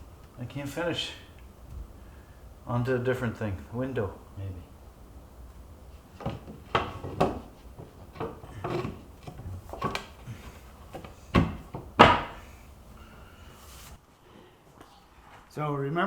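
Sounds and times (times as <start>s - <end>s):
objects knocking and clunking: 5.4s - 13.2s.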